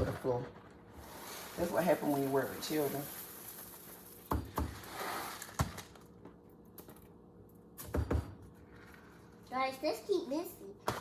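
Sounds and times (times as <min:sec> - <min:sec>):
cereal being stirred: 0:00.9 - 0:05.8.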